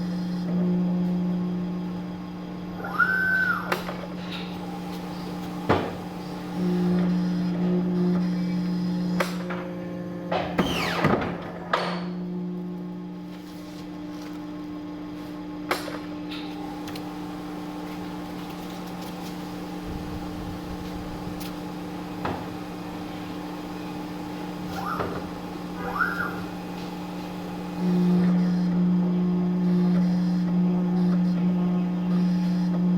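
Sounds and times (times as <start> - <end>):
guillotine machine humming: 0.0 - 32.9
short squeaks: 24.7 - 26.6.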